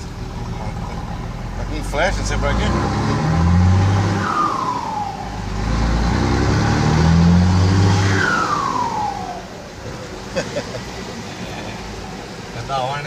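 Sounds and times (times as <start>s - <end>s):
engine deep rumble: 0.0s - 13.0s
exhaust falling whistle: 3.5s - 9.8s.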